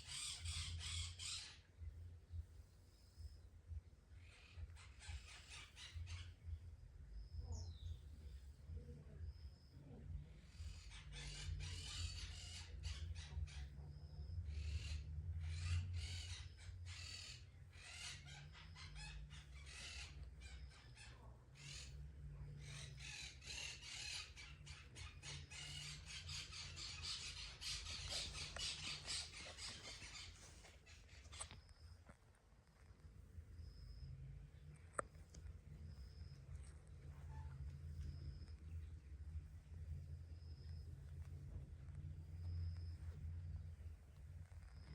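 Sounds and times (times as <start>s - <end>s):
faint bird chirps: 0.0s - 44.9s.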